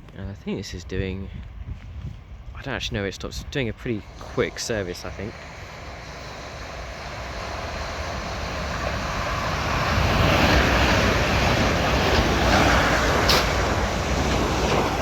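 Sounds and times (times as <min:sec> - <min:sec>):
train passing at speed: 0:03.8 - 0:15.0.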